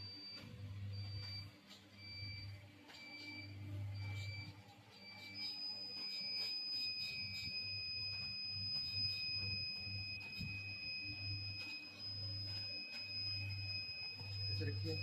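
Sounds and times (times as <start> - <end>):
low pulsing hum: 0.0 - 15.0
short beeps: 0.0 - 15.0
high-pitched electronic beeper tone: 3.1 - 15.0.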